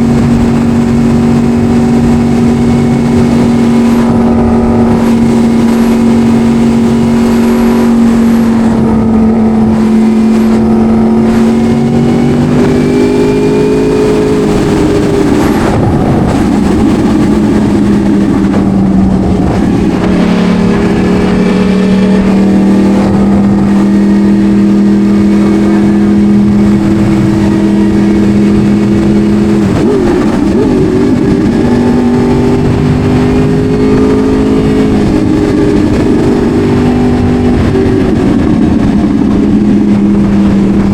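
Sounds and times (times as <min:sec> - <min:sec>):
motorcycle engine cruising: 0:00.0 - 0:40.9
wind rush: 0:00.0 - 0:40.9.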